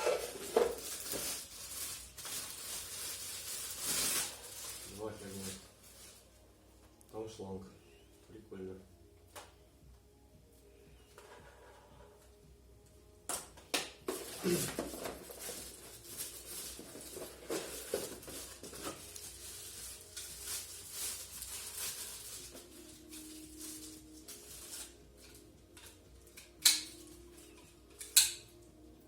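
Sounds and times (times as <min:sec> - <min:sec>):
packaging rustling: 0:00.0 - 0:06.3, 0:14.0 - 0:27.6.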